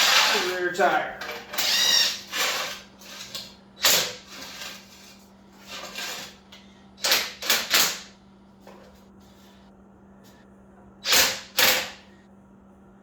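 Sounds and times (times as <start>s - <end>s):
jack scraping and clanking: 0.0s - 1.7s, 2.3s - 6.4s.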